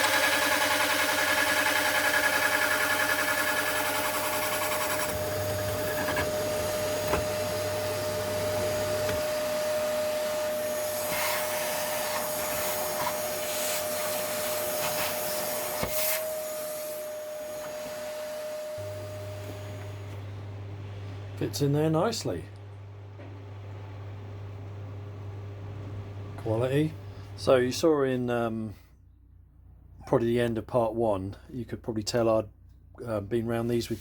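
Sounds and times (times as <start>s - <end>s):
power tool motor whirring: 0.0s - 19.9s.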